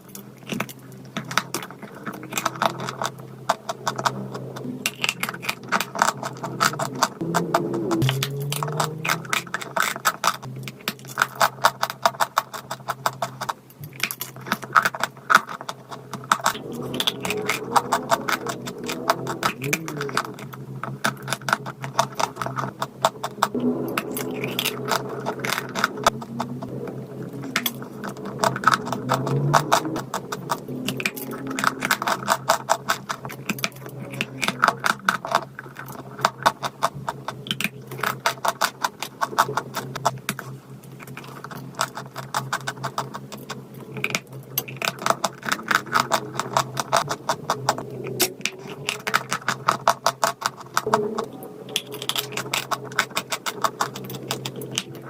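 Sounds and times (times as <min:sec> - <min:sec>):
chalk being chewed crunchily: 0:00.0 - 0:51.3.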